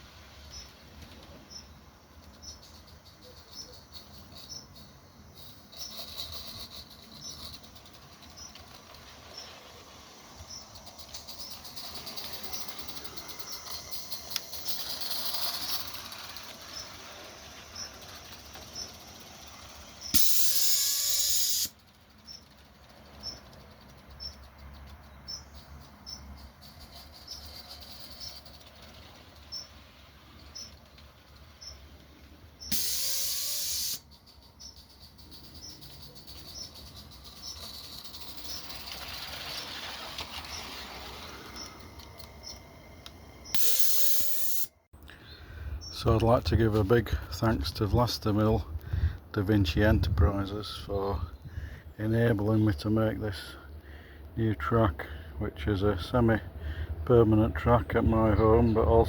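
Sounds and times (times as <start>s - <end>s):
model steam locomotive hissing: 5.2s - 21.9s, 28.1s - 34.1s, 37.1s - 42.0s, 43.0s - 44.7s
loud blast of steam hiss: 20.1s - 21.7s, 32.7s - 34.0s.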